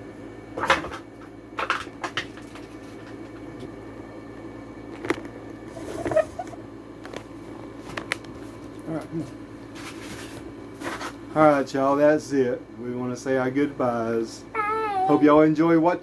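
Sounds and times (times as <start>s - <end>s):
low room hum: 0.0s - 16.0s
camera handling knocks and rustles: 5.0s - 5.3s.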